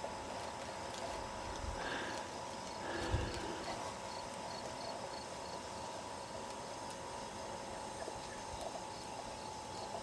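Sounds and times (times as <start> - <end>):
insect drone: 0.0 - 10.0
pulsed cricket chirps: 0.0 - 10.0.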